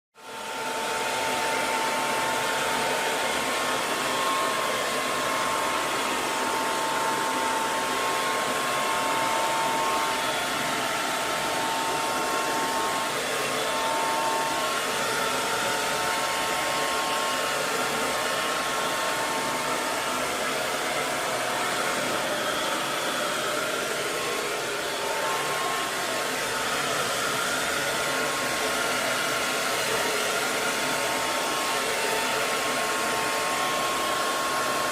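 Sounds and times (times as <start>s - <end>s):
hair dryer blowing: 0.2s - 34.9s.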